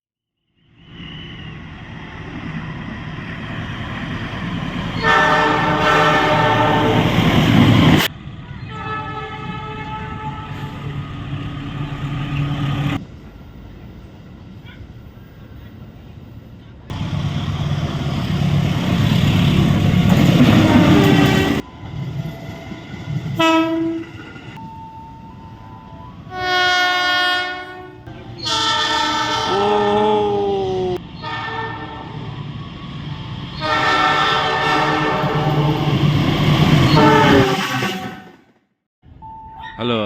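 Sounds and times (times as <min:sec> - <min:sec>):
rail rumble: 0:00.6 - 0:38.7
train horn blasts: 0:05.0 - 0:07.1, 0:08.5 - 0:10.8, 0:20.5 - 0:21.6, 0:23.4 - 0:24.2, 0:26.3 - 0:29.8, 0:31.2 - 0:32.2, 0:33.6 - 0:35.6, 0:36.9 - 0:38.4.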